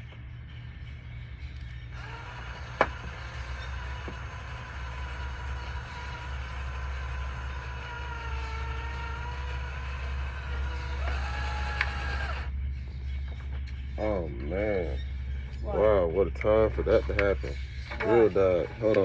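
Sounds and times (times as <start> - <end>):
cordless drill motor whining: 1.5 - 12.6.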